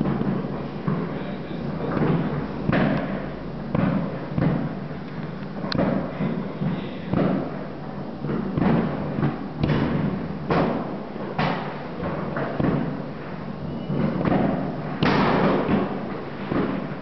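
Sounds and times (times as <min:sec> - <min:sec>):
fireworks booms and bangs: 0:05.6 - 0:17.0.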